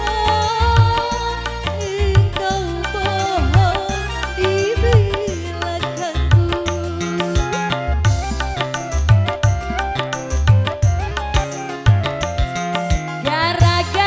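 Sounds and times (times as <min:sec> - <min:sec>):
kendang drum beat: 0:00.0 - 0:14.0
live dangdut band playing: 0:00.0 - 0:14.0
sliding lead melody: 0:00.0 - 0:14.0.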